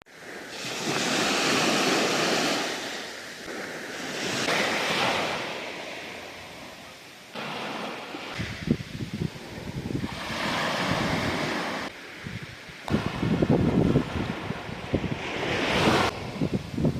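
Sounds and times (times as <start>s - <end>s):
sea waves washing onto shore: 0.1s - 16.9s
wind buffeting microphone: 8.2s - 16.9s.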